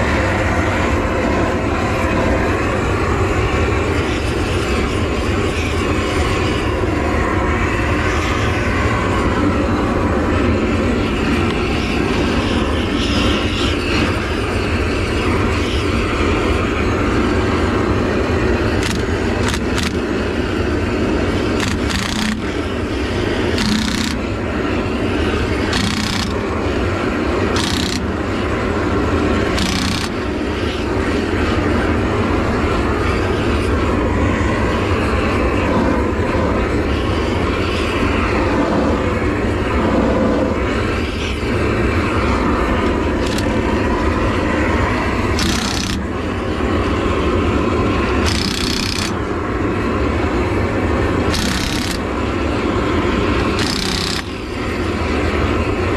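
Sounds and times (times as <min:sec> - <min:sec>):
torch flame rushing: 0:00.0 - 0:55.9.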